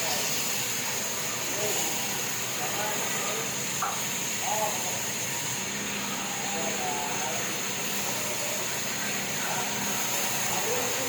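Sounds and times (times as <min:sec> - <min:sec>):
faint voices: 0:00.0 - 0:11.0
sawmill machinery whirring: 0:00.0 - 0:11.0.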